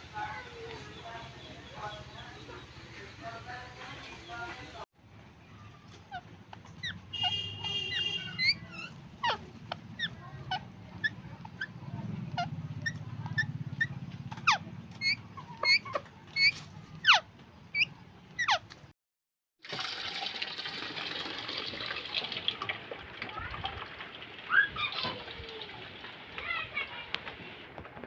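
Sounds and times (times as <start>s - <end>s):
parrot calling: 6.1s - 18.7s.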